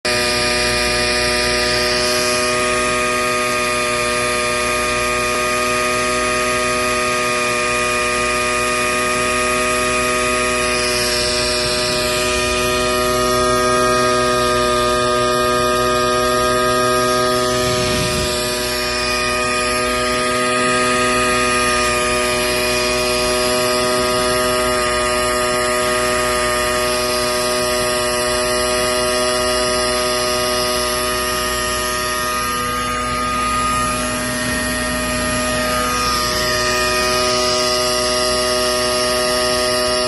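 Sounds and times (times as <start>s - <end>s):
machinery hum: 0.1s - 40.0s.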